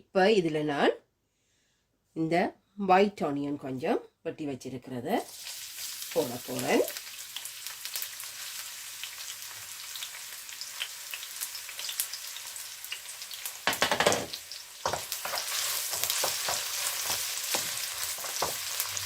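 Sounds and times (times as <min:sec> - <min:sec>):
hot oil crackling in a wok: 0:05.2 - 0:19.0
onion sizzling in oil: 0:05.2 - 0:19.0.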